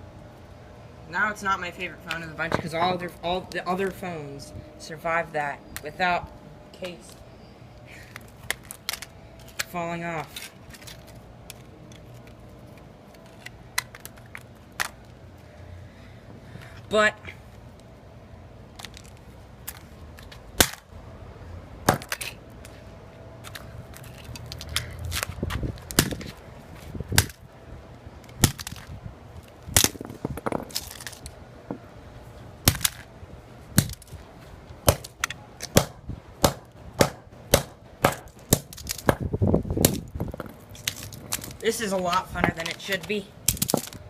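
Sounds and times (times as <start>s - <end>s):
phone being smashed: 28.4s - 28.9s, 32.6s - 33.1s.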